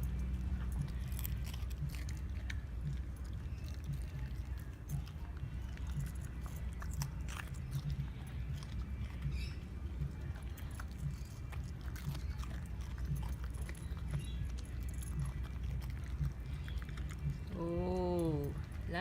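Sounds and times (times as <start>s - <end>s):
dog chewing crunchy beans: 0.0s - 19.0s.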